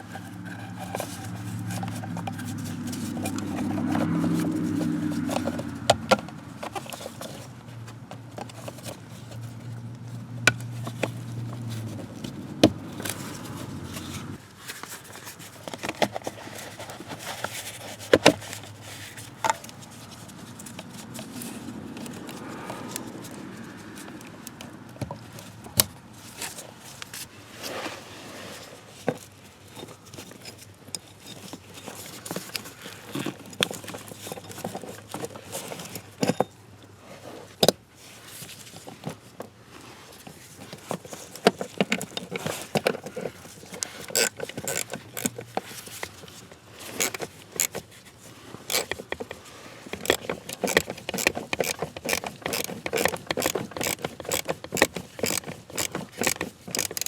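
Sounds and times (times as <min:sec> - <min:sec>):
tools clicking and clinking: 0:00.1 - 0:07.4, 0:40.8 - 0:48.0, 0:48.7 - 0:57.0.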